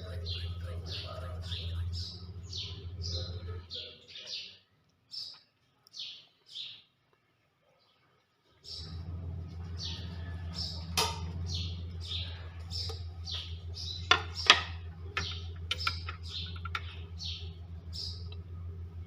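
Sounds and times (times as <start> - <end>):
low electrical hum: 0.0 - 3.9, 7.0 - 19.0
small bird chirping: 0.0 - 6.9, 8.5 - 19.0.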